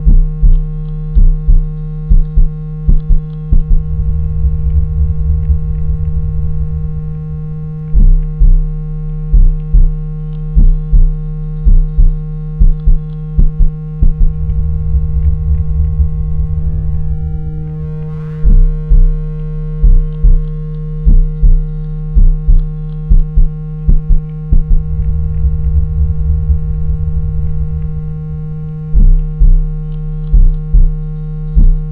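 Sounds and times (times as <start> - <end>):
low bass pulses: 0.0 - 31.9
steady low synthesized tone: 0.0 - 31.9
sustained low rumble: 0.0 - 31.9
fainter higher tone: 3.4 - 9.0, 14.0 - 19.8, 24.4 - 29.9
high rising and falling sweeps: 3.7 - 8.3, 24.7 - 29.1.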